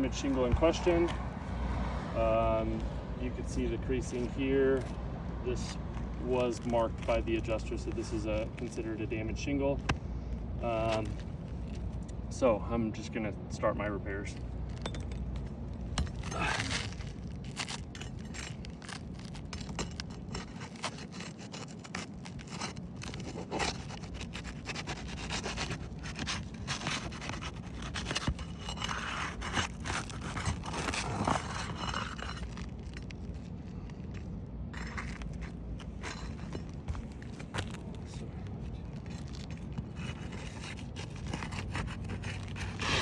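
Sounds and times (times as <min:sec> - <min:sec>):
scraping on roof shingles: 0:16.0 - 0:34.2, 0:38.9 - 0:43.0.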